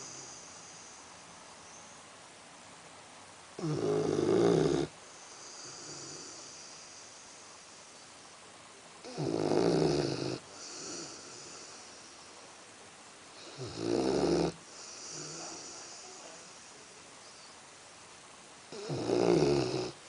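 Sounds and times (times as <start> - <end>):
dog snoring: 3.6 - 7.3, 9.0 - 12.3, 13.4 - 16.8, 18.7 - 20.0.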